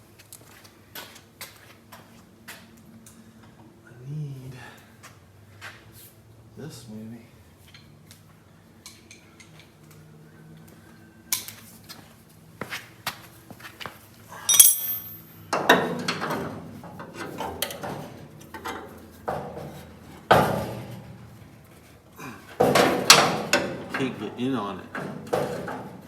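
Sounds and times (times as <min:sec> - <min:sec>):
metal hand tools clinking: 0:14.4 - 0:15.5
rattling and scraping: 0:14.5 - 0:26.0.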